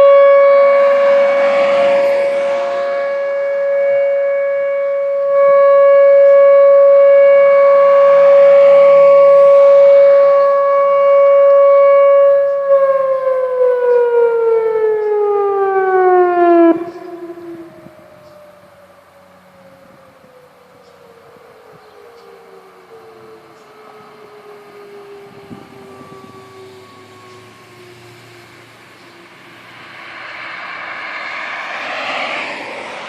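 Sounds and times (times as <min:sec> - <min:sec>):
warning siren steady tone: 0:00.0 - 0:33.0.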